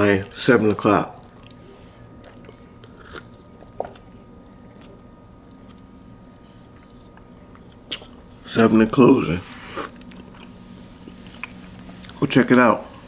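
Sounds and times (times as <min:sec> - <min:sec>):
person chewing food: 0:01.2 - 0:08.5, 0:09.5 - 0:12.2.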